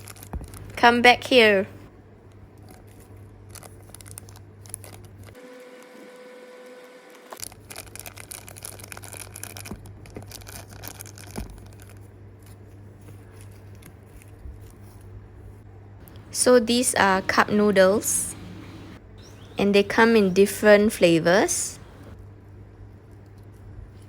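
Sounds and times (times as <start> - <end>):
plastic bags crinkling: 7.4 - 12.0.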